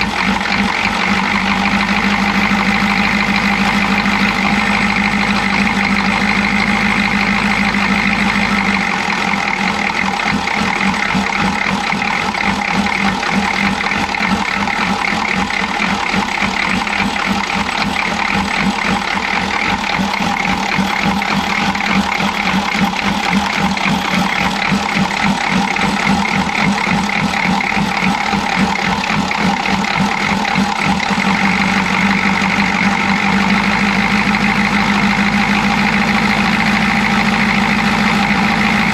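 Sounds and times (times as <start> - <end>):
diesel engine idling roughly: 0.0 - 38.9.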